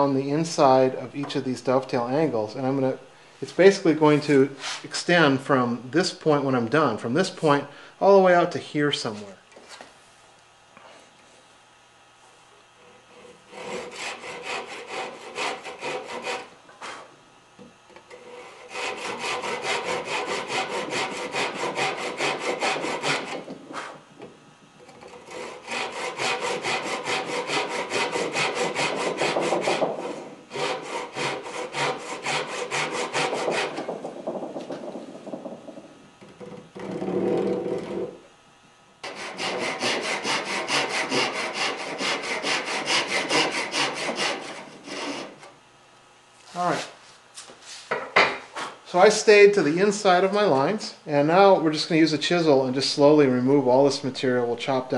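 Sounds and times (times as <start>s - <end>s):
hand saw cutting wood: 12.8s - 17.1s, 18.0s - 24.0s, 24.8s - 33.9s, 39.0s - 45.5s.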